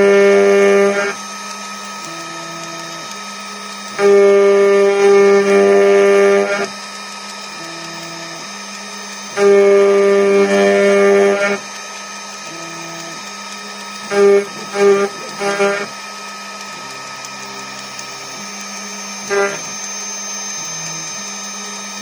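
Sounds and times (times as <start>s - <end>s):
router spindle running: 0.0s - 22.0s.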